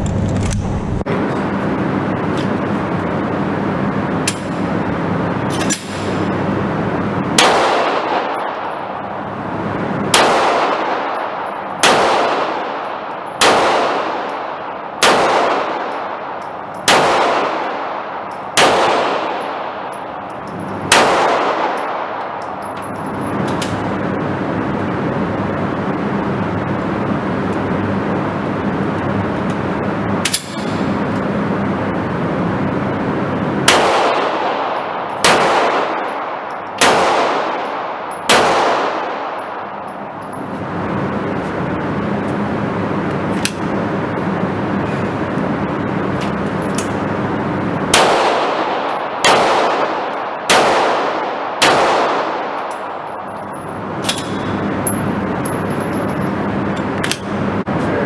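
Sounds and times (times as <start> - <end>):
steady hum: 0.0 - 58.0
pistol shots: 7.2 - 24.1, 33.6 - 40.1, 45.9 - 56.0.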